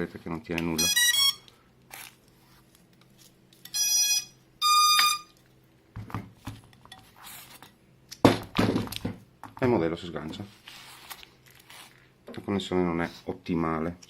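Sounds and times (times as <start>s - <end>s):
electronic beeps from motors: 0.8s - 1.5s, 3.7s - 5.3s.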